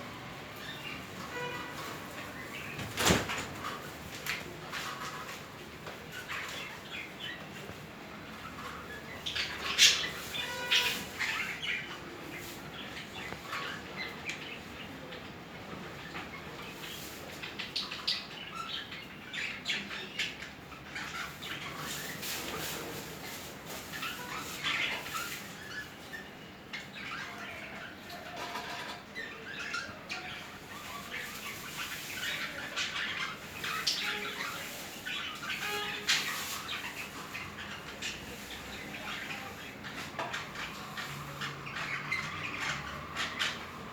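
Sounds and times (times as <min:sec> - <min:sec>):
budgerigars chirping and chattering: 0:00.6 - 0:43.9.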